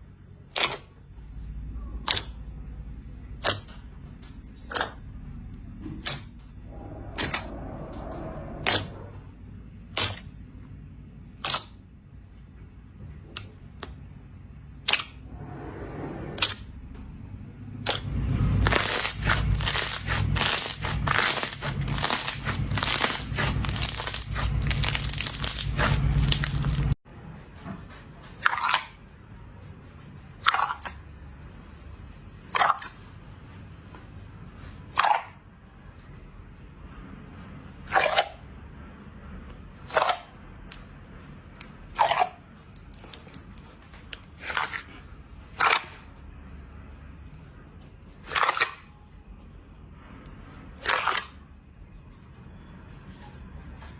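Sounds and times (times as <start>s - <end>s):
slime crunching and crackling: 9.9s - 10.4s, 17.8s - 27.0s, 41.9s - 46.1s, 48.2s - 48.9s, 50.7s - 51.4s.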